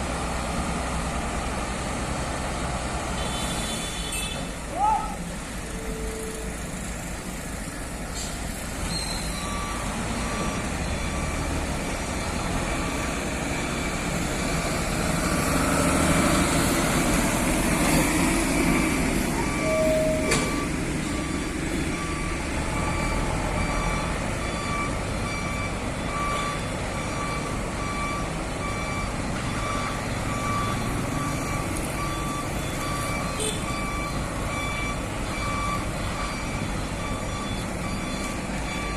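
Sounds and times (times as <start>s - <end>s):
diesel engine rumble: 0.0s - 38.9s
reversing alarm beeping: 8.9s - 16.6s, 17.6s - 38.9s.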